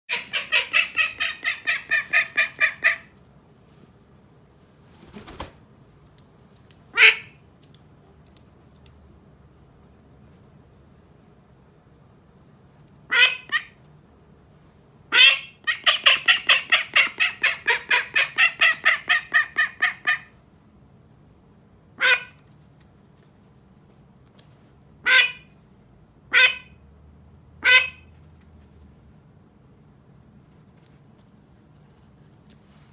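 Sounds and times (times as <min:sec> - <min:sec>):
duck quacking: 0:00.1 - 0:03.1, 0:07.0 - 0:07.3, 0:26.3 - 0:26.7, 0:27.6 - 0:28.0
soft rustle: 0:22.4 - 0:24.8, 0:30.4 - 0:32.9.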